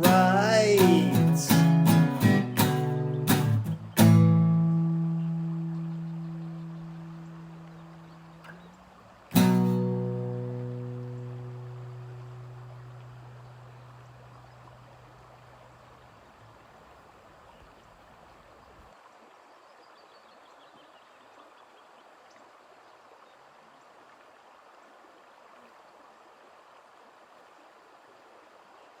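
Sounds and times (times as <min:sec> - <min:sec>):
running water: 0:00.0 - 0:29.0
low guitar note: 0:09.4 - 0:13.4.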